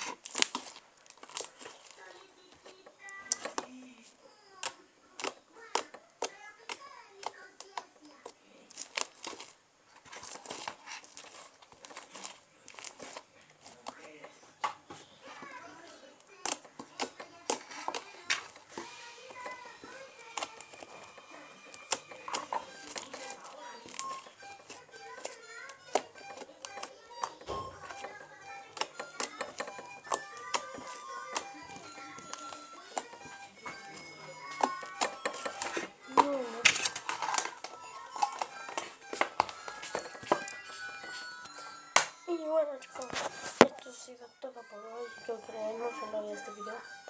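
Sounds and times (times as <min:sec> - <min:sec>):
background music: 0:17.4 - 0:47.0.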